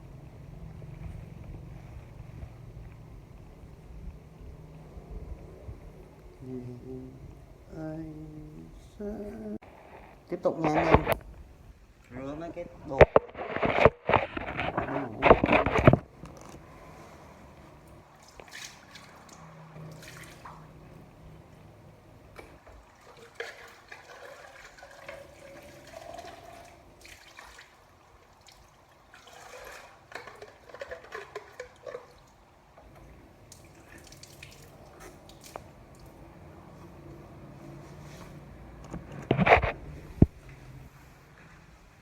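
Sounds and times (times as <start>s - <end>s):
water running at a sink: 22.6s - 32.3s.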